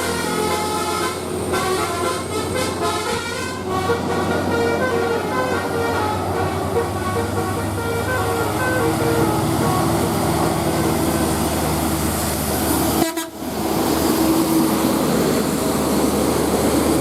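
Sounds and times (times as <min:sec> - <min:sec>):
multi-tone bus air horn: 0:00.0 - 0:11.8, 0:12.9 - 0:13.5
bus passing: 0:00.0 - 0:17.0.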